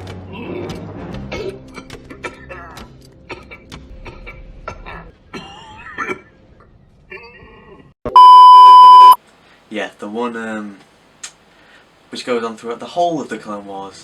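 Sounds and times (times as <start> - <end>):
loud steady beep tone: 8.1 - 9.2.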